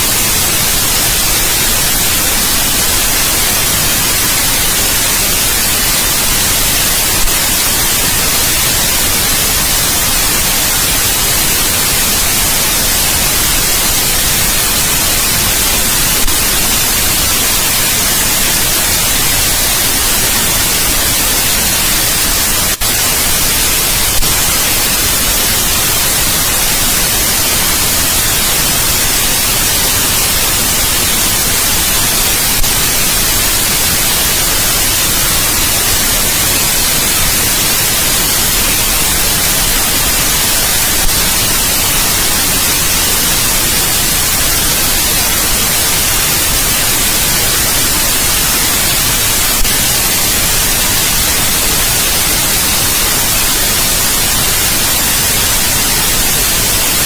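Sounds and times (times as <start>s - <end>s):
white noise hiss: 0.0s - 57.0s.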